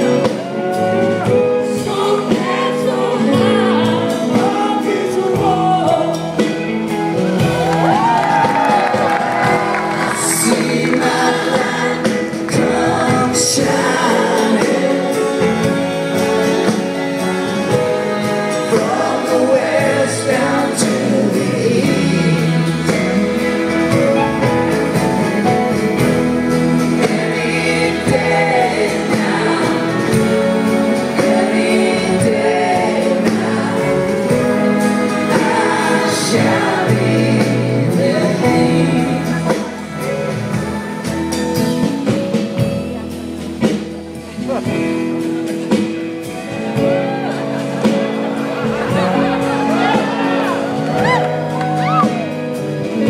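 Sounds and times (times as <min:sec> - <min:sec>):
live band music: 0:00.0 - 0:53.0
several voices singing together: 0:01.5 - 0:06.5, 0:07.5 - 0:16.8, 0:18.2 - 0:23.7, 0:26.5 - 0:40.1.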